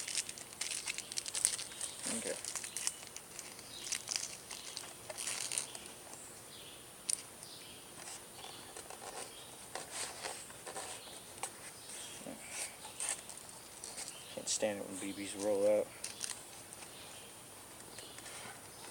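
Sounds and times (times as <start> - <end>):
plastic packet rustling: 0.0 - 6.0, 15.4 - 16.4.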